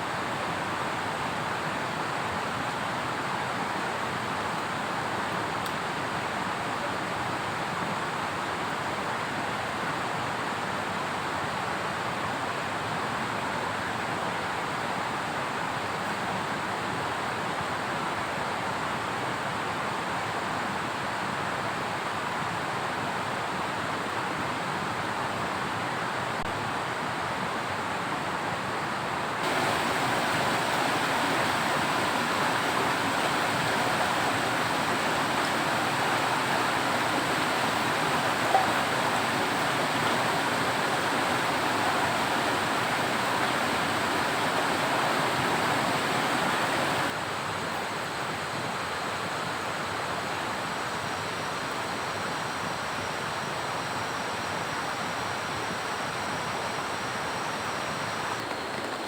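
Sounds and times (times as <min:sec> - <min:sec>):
rushing water in heavy rain: 0:28.8 - 0:53.1.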